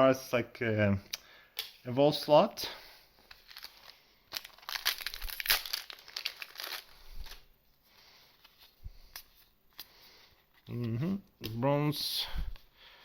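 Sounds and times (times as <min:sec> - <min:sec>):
foil wrapper tearing and crinkling: 0:03.3 - 0:07.5.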